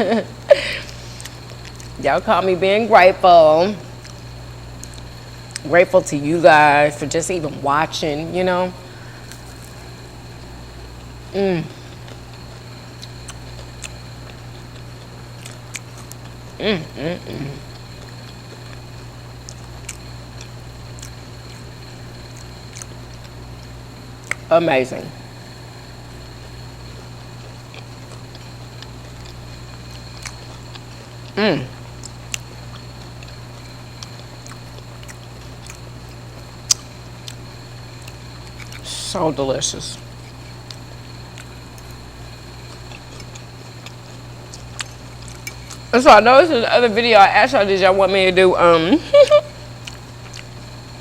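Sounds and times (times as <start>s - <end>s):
steady low hum: 0.0s - 51.0s
chewing with mouth open: 0.8s - 2.0s, 4.0s - 5.7s, 11.8s - 24.5s, 26.4s - 38.9s, 40.0s - 45.9s, 49.7s - 50.8s.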